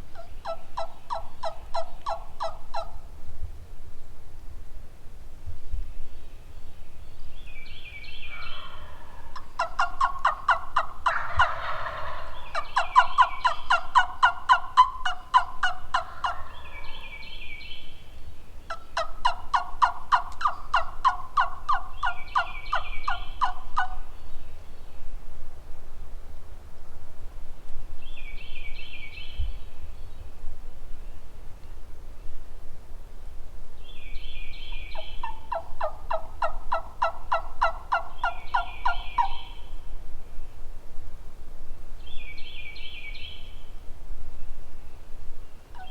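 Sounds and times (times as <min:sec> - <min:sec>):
turkeys calling: 0:00.1 - 0:03.1, 0:08.2 - 0:17.4, 0:18.7 - 0:24.0, 0:34.7 - 0:39.7.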